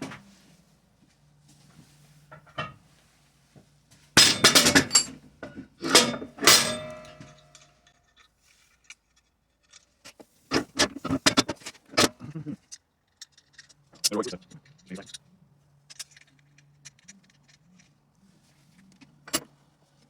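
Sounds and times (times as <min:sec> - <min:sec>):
metal items clinking and clattering: 0:04.2 - 0:09.9, 0:15.8 - 0:18.0, 0:18.7 - 0:19.6.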